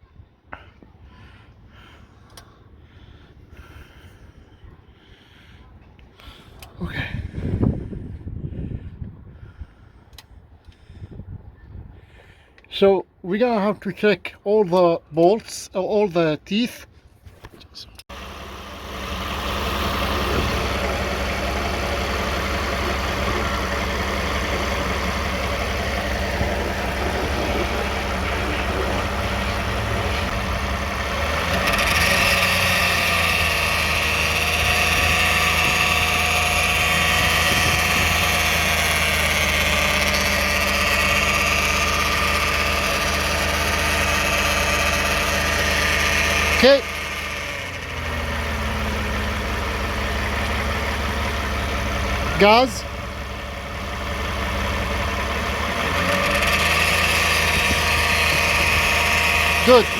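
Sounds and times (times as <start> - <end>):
car engine idling: 18.0 - 59.9.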